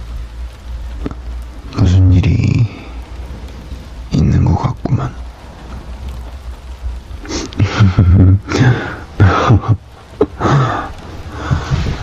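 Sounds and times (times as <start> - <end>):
man's low breathy voice: 1.7 - 3.1, 8.4 - 12.0.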